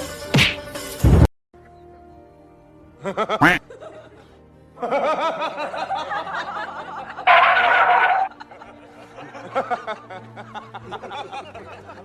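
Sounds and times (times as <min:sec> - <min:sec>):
background music: 0:00.0 - 0:12.0
people laughing: 0:03.0 - 0:12.0.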